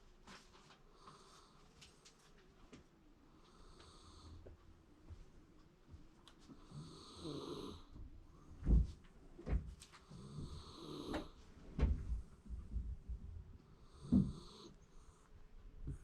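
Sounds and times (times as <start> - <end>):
dog snoring: 6.6 - 8.0, 10.0 - 11.4, 13.8 - 15.3.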